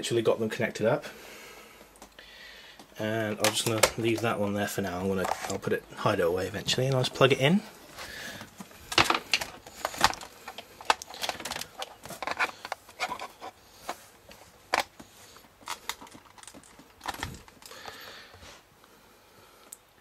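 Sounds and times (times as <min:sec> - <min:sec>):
power cable clicking and rustling: 0:03.3 - 0:04.4, 0:05.0 - 0:05.7, 0:07.9 - 0:18.4.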